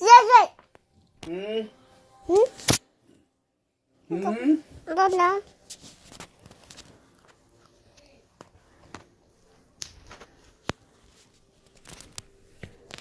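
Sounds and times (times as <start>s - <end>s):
faint voice: 1.2s - 2.5s, 4.0s - 4.8s.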